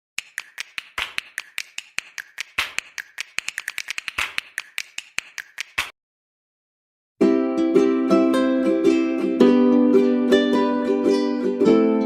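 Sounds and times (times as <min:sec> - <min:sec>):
rapid sharp clicks: 0:00.2 - 0:05.9.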